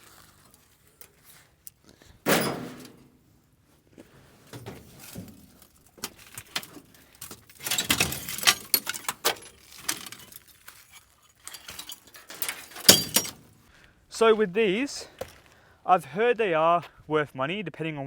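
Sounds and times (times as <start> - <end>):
metal scrap clinking and rattling: 2.3 - 3.1, 4.5 - 13.6.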